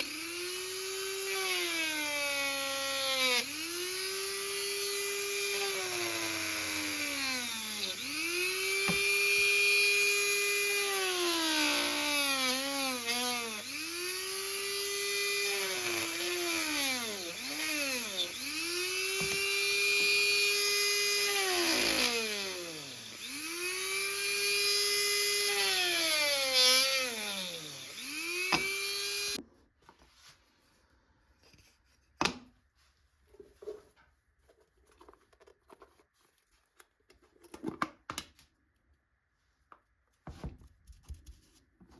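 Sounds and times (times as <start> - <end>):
power tool motor whining on wood: 0.0 - 29.4.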